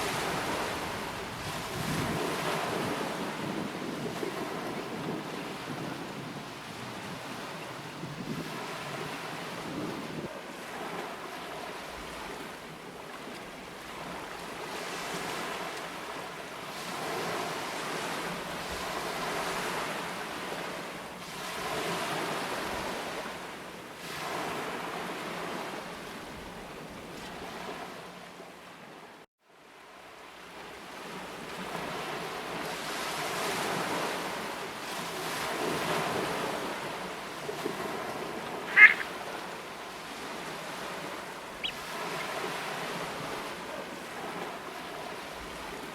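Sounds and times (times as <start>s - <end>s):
sea waves washing on shore: 0.0s - 45.9s
bird call short and high: 38.7s - 39.2s, 41.6s - 42.3s.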